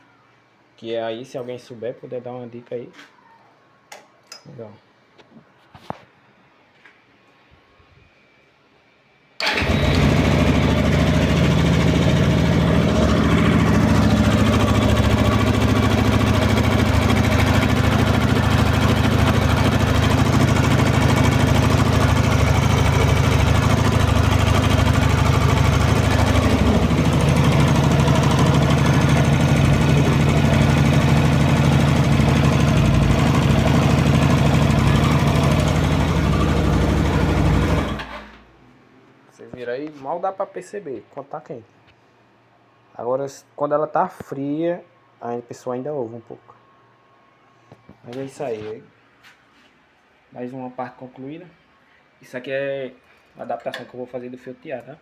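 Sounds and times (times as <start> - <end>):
motorcycle engine idling: 9.4 - 38.0.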